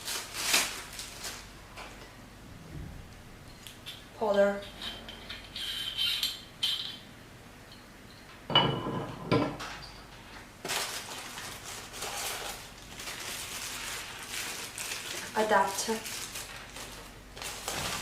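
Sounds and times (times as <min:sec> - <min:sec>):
packaging rustling: 0:00.0 - 0:01.5, 0:10.6 - 0:18.0.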